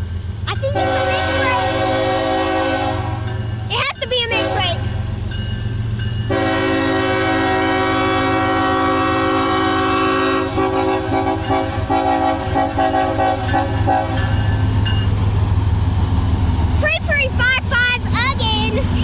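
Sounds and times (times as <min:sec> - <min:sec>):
passing train rumble: 0:00.0 - 0:19.0
locomotive horn blasts: 0:00.7 - 0:03.4, 0:06.3 - 0:14.5.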